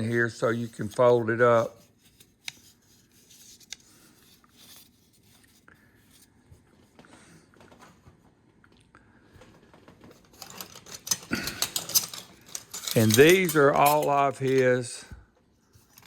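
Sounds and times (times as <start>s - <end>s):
light rubbing of tools: 0.0s - 6.3s, 10.4s - 16.0s.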